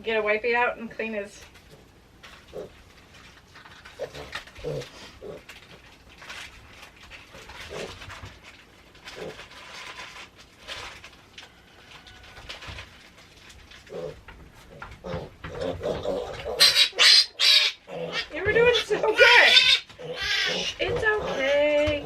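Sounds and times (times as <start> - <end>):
piglet grunting and squealing: 1.7 - 2.8, 3.9 - 5.8, 7.3 - 8.1, 13.8 - 22.0.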